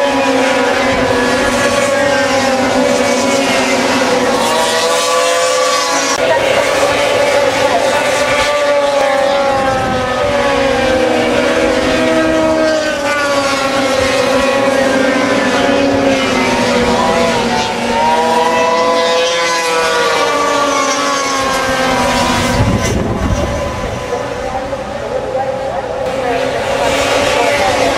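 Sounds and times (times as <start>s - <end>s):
racing snowmobiles at full throttle: 0.0s - 27.9s.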